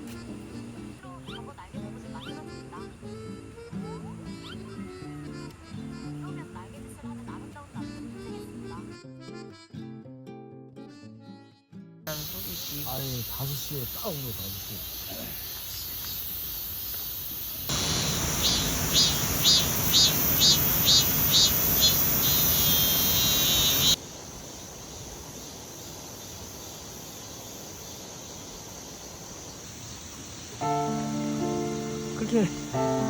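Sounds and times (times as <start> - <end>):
insect calling in pulses: 12.1 - 33.0
steady rushing noise: 17.7 - 24.0.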